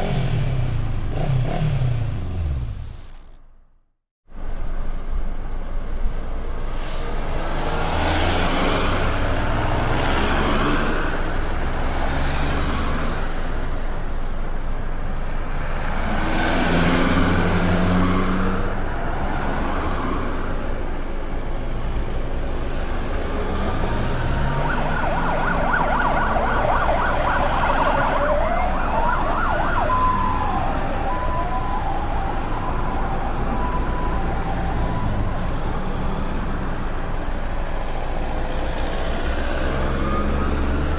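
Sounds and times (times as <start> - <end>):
street traffic passing: 0.0 - 40.9
emergency vehicle siren: 23.1 - 40.9.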